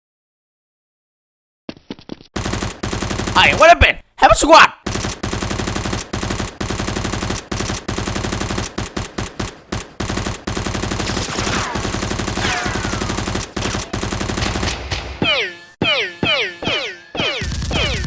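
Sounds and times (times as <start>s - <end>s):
automatic gunfire: 2.4s - 3.7s, 4.8s - 15.2s.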